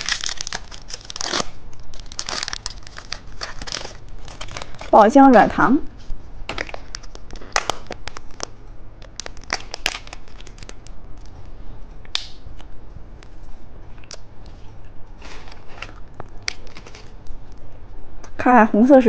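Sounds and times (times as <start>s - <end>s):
plastic wrapper crinkling: 0.0s - 11.4s, 15.2s - 17.6s.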